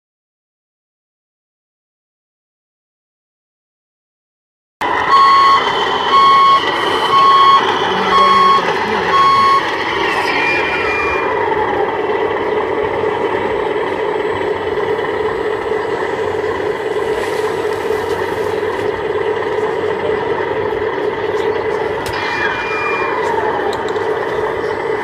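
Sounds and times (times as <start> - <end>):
truck reversing alarm beeping: 4.8 - 16.9, 21.4 - 25.0
steady running noise: 4.8 - 25.0.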